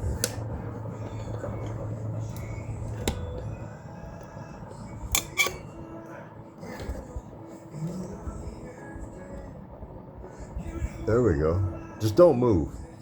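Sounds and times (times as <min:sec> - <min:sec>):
handling noise rubbing and clatter: 0:00.0 - 0:05.8.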